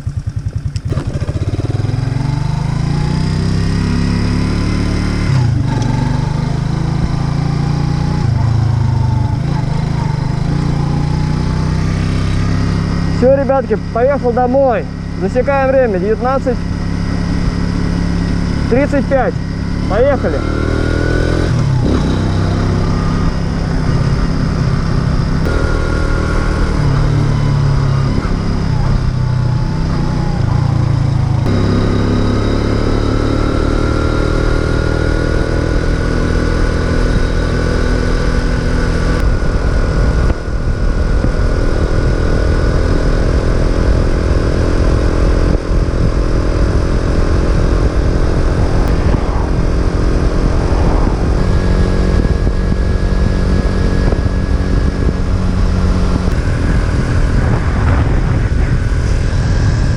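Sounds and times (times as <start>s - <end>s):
moped engine accelerating: 0.0s - 59.9s
wind on microphone: 35.2s - 59.9s.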